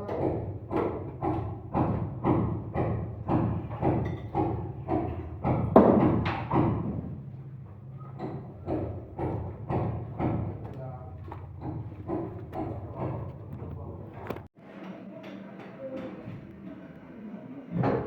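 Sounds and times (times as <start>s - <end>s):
steady thumps: 8.2s - 14.5s.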